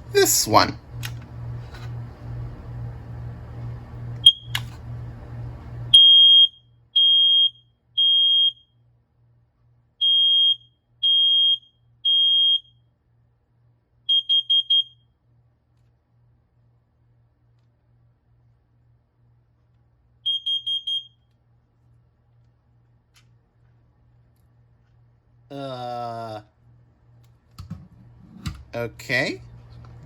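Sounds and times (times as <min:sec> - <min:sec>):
smoke alarm beeping: 0:04.2 - 0:04.6, 0:05.9 - 0:08.8, 0:10.0 - 0:12.8, 0:14.1 - 0:15.1, 0:20.2 - 0:21.3.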